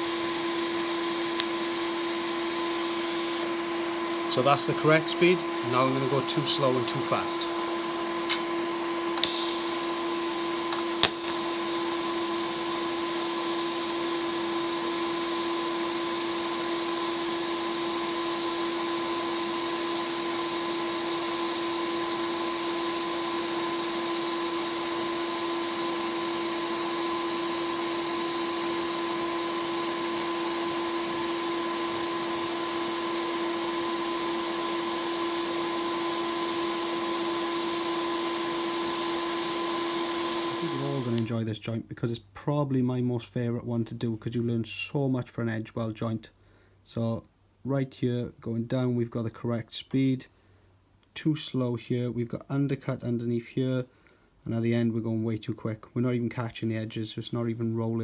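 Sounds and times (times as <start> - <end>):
welding arc hiss: 0.0 - 12.2.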